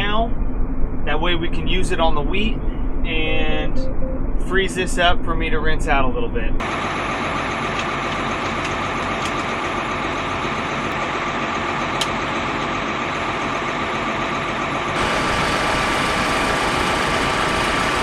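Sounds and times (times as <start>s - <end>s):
engine running: 0.0s - 18.0s.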